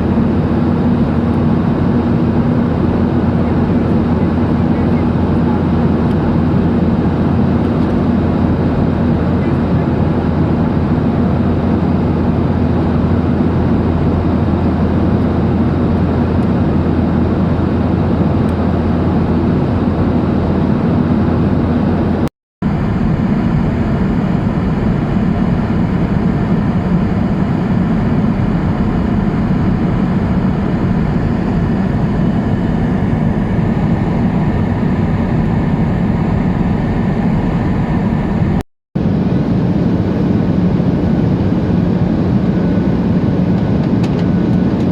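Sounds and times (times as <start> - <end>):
jet engine drone: 0.0 - 44.9
airflow rush: 18.8 - 43.6.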